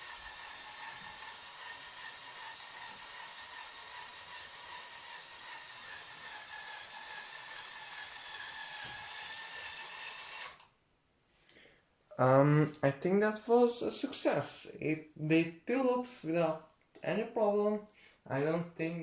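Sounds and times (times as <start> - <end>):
toy train motor whining: 0.0 - 10.7.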